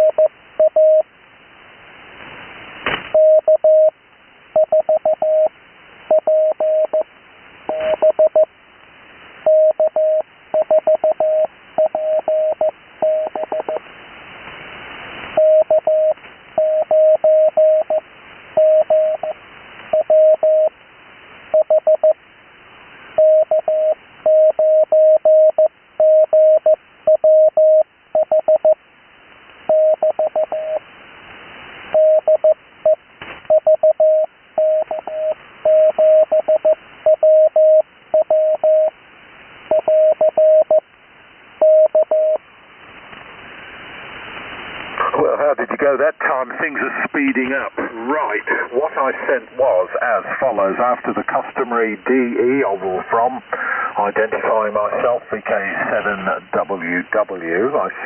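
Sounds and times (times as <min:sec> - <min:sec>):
morse code tone: 0:00.0 - 0:01.0, 0:04.6 - 0:05.5, 0:06.1 - 0:07.0, 0:07.7 - 0:08.5, 0:09.5 - 0:13.8, 0:15.4 - 0:18.0, 0:18.6 - 0:19.4, 0:20.0 - 0:20.7, 0:21.6 - 0:22.2, 0:23.2 - 0:28.8, 0:29.7 - 0:30.8, 0:32.0 - 0:32.6, 0:33.5 - 0:38.9, 0:39.7 - 0:40.8, 0:41.6 - 0:42.4
radio hiss: 0:00.0 - 0:27.1, 0:28.0 - 0:58.0.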